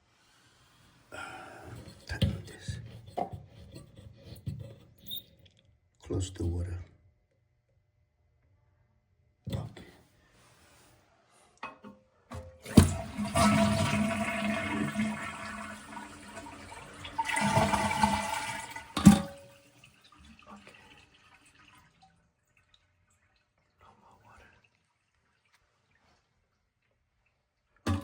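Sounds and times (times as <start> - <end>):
toilet handle clack: 11.6 - 14.2, 17.2 - 19.4
toilet flushing water rushing: 12.6 - 22.0
faint water trickling: 14.1 - 28.0.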